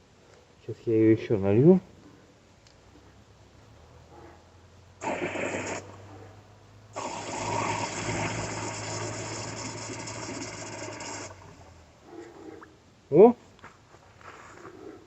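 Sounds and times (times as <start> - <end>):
water pouring into radiator: 7.0 - 11.7.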